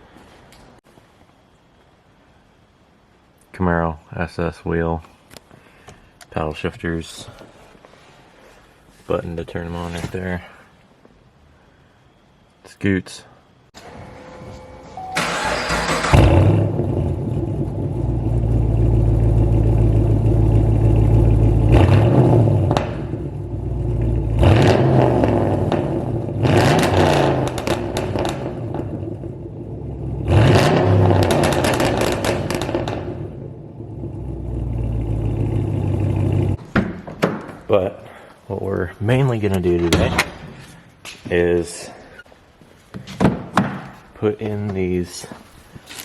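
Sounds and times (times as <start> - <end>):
car engine starting and idling: 13.8 - 36.6
engine revving: 15.2 - 36.6.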